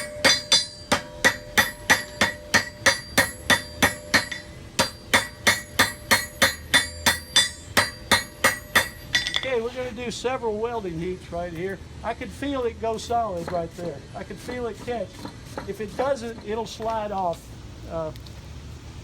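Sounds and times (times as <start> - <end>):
hammer striking iron on anvil: 0.0 - 9.6, 13.4 - 17.0.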